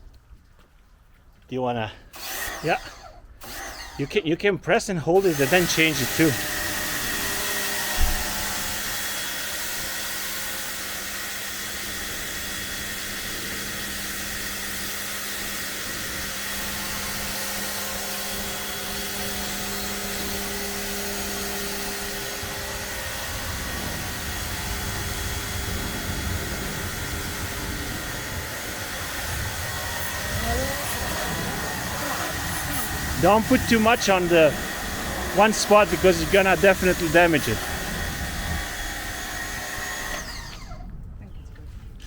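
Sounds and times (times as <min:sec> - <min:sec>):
motor hum: 0:02.0 - 0:04.2, 0:05.2 - 0:41.2
pressure washer spray hiss: 0:25.8 - 0:38.0.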